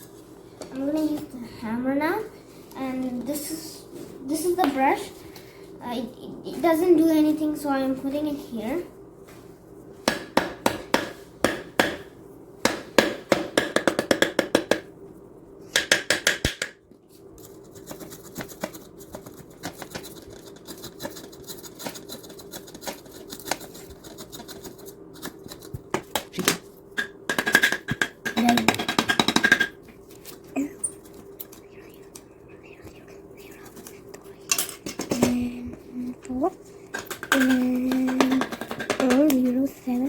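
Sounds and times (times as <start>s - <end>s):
small hammer tapping clay: 12.7s - 14.8s, 15.8s - 16.8s.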